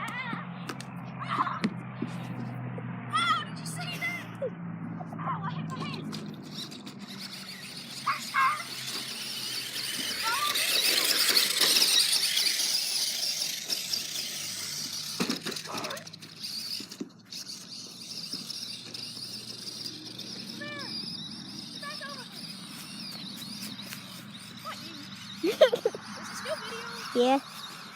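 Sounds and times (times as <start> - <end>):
toy car motor whirring: 3.2 - 4.4, 5.4 - 27.9
short high squeaks: 5.7 - 27.9.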